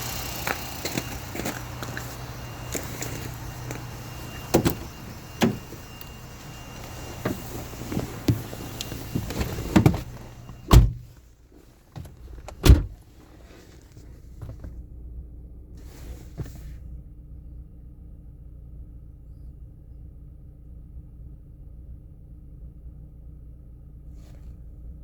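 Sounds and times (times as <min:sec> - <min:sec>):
car engine idling: 0:00.0 - 0:25.0
heavy thumps: 0:00.8 - 0:11.2.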